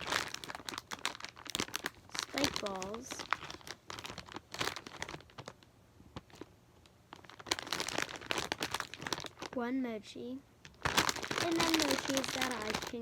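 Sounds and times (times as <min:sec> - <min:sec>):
fidget toys rustling and clicking: 0:10.7 - 0:13.0.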